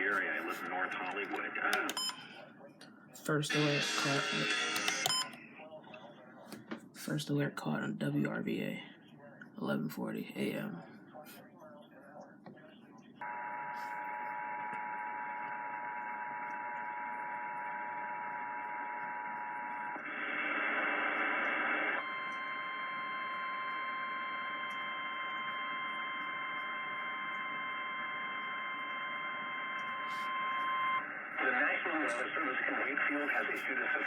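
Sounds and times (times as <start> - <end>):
radio static hiss: 0.0 - 2.6, 3.2 - 7.7, 30.0 - 34.0
steady warning tone: 3.2 - 5.4, 22.0 - 31.2
two-tone alarm: 3.5 - 5.4, 22.0 - 31.2.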